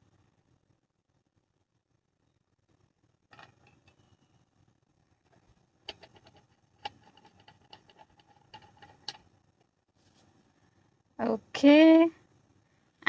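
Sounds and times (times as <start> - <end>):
faint clicks and taps: 3.3 - 4.1, 5.2 - 10.3.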